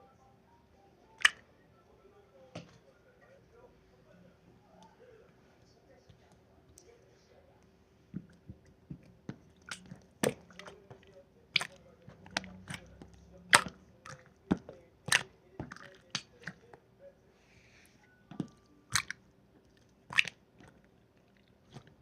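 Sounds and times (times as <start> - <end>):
slime squished by hand: 9.5 - 11.0, 11.6 - 16.6, 18.9 - 19.2, 20.1 - 20.8.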